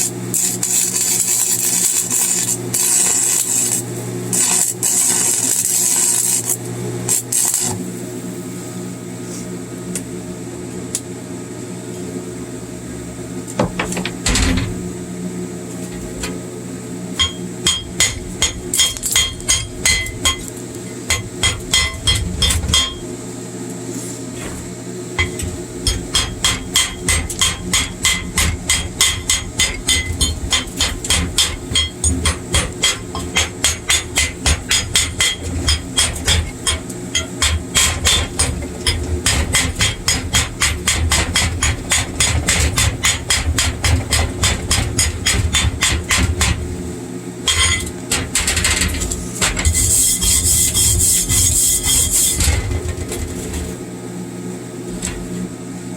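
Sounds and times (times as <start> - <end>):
chipping hammer striking metal: 17.2 - 23.0, 25.2 - 46.6.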